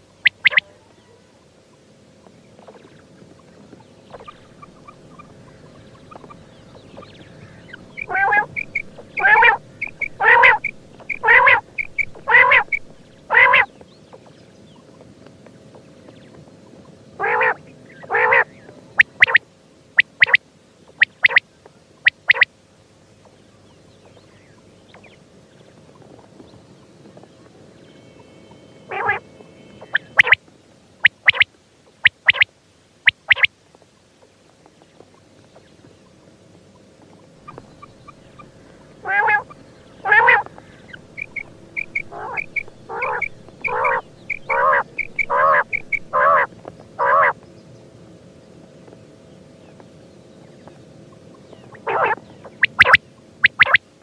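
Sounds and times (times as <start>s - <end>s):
quail calling: 0.0s - 1.2s, 4.0s - 13.7s, 17.2s - 19.4s, 20.0s - 20.4s, 21.0s - 21.4s, 22.0s - 22.5s, 28.9s - 29.2s, 29.8s - 30.4s, 31.0s - 33.5s, 37.4s - 47.4s, 51.6s - 53.8s.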